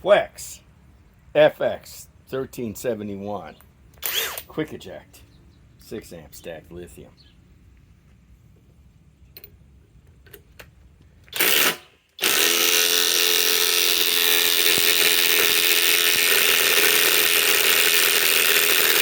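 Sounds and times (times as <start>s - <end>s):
cordless impact wrench hammering: 11.2s - 19.0s.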